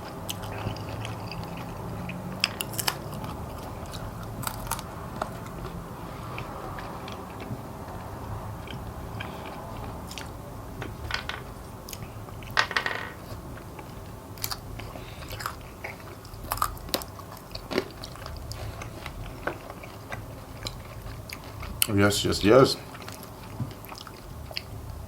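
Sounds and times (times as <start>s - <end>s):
bones crunching: 0.0s - 8.0s, 14.4s - 24.2s
chewing fried chicken: 0.0s - 10.5s, 13.3s - 25.0s.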